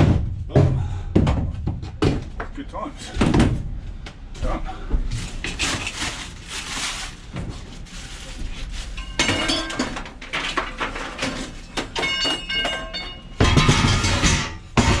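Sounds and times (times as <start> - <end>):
rustling noise: 5.0 - 9.3
scrap metal clattering: 8.7 - 15.0.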